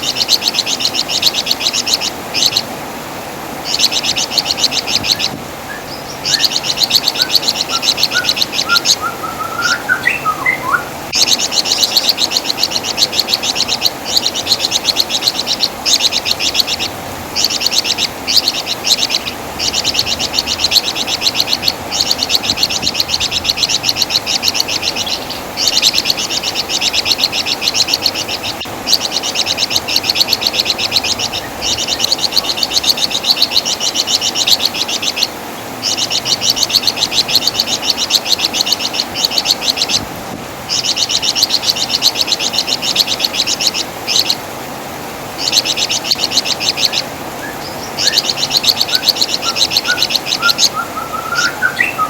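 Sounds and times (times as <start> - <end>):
bird high rapid chattering: 0.0 - 2.7, 3.6 - 40.1, 40.7 - 44.5, 45.4 - 52.0
lower rising bird notes: 45.4 - 52.0.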